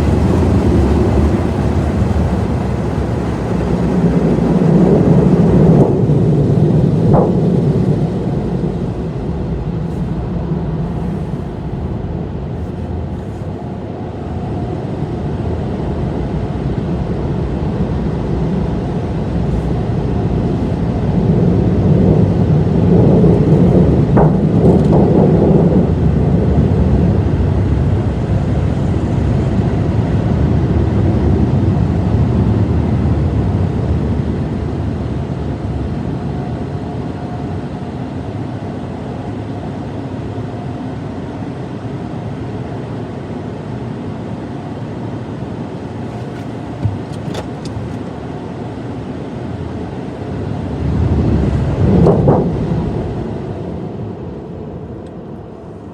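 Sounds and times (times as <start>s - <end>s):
car rumble: 0.0s - 14.4s, 22.2s - 26.2s, 45.9s - 48.6s.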